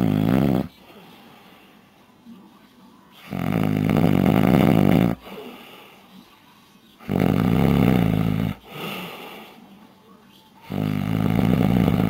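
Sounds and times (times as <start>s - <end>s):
man snoring heavily: 0.0s - 0.7s, 3.3s - 5.2s, 7.1s - 8.7s, 10.7s - 12.0s
soft breath: 0.7s - 3.3s, 5.2s - 7.0s, 7.6s - 10.5s.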